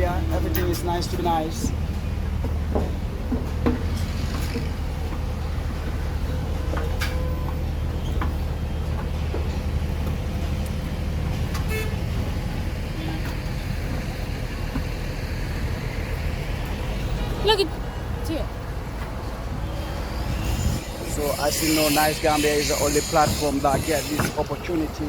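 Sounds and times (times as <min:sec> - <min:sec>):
low rumble of engines: 0:00.0 - 0:25.0
vehicle horn toot: 0:11.6 - 0:12.0.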